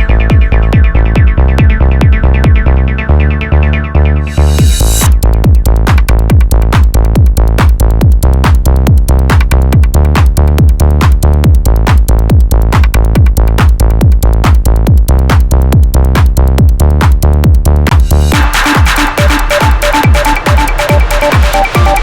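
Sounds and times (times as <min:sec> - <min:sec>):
drum machine beat: 0:00.0 - 0:02.9, 0:04.3 - 0:22.0
held bass and synth tones: 0:00.0 - 0:22.0.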